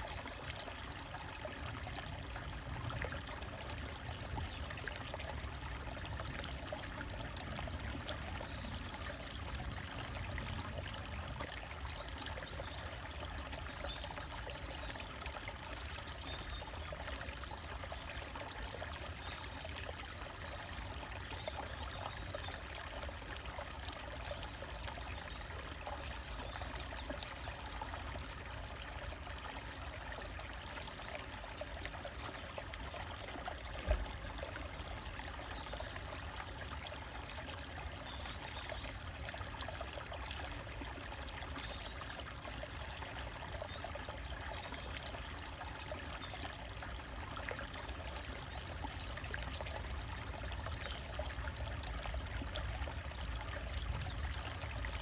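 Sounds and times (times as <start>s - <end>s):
stream trickling over rocks: 0.0s - 55.0s.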